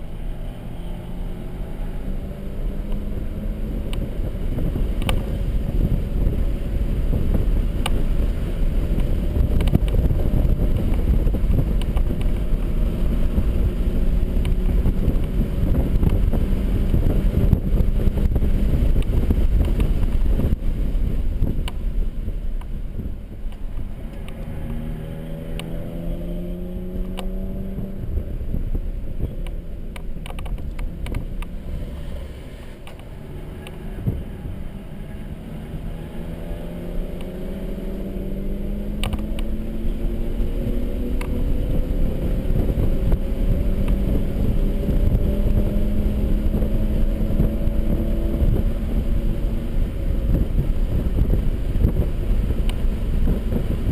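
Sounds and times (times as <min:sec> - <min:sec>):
road and wind noise: 0:00.0 - 0:53.9
car engine revving hard: 0:24.2 - 0:28.6, 0:31.6 - 0:53.9.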